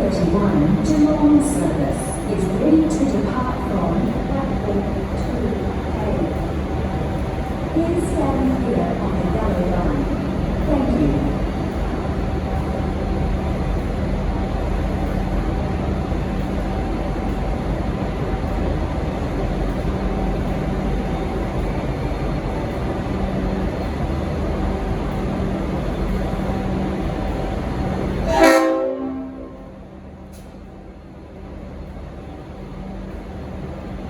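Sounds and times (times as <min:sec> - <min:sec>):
diesel locomotive running: 0:00.0 - 0:34.0
locomotive horn blast: 0:28.2 - 0:29.8.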